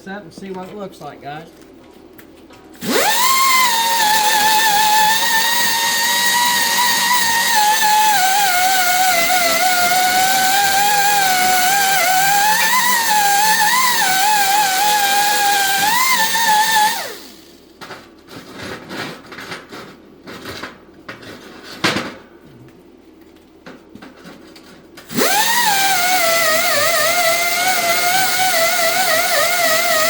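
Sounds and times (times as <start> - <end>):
electric grinder on steel: 2.8 - 17.5, 25.1 - 30.0.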